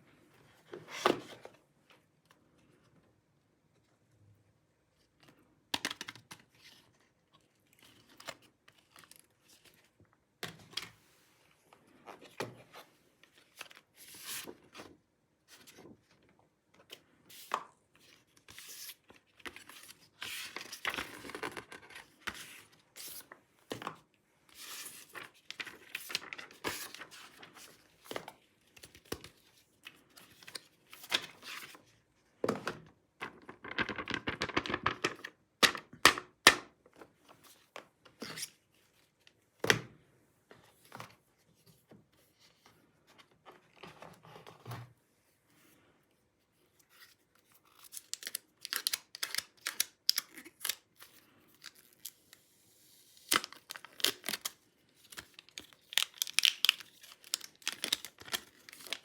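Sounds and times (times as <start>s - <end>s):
packaging tearing and crinkling: 53.2s - 59.0s.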